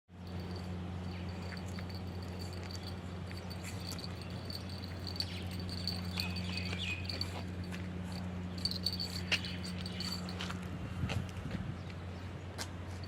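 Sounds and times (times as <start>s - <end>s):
low steady hum: 0.1s - 13.0s
crickets trilling: 0.2s - 7.6s.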